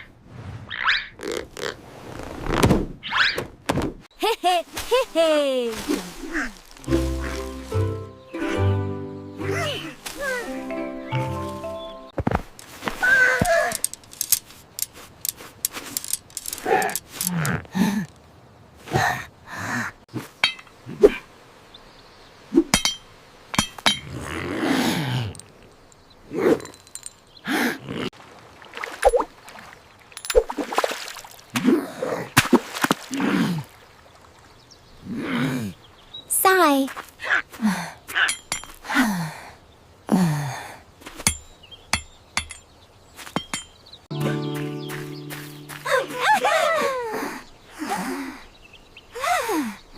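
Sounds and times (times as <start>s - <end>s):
ringing metallic clinks: 38.2s - 38.8s, 41.3s - 42.7s, 43.4s - 43.8s
steady music chord: 44.1s - 46.0s.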